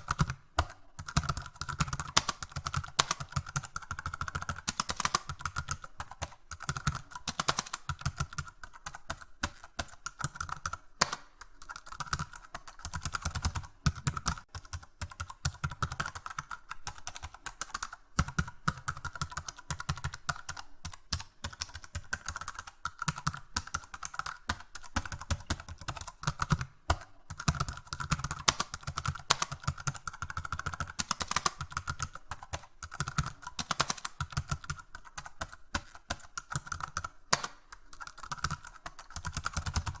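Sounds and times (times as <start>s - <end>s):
keyboard typing: 0.0s - 40.0s.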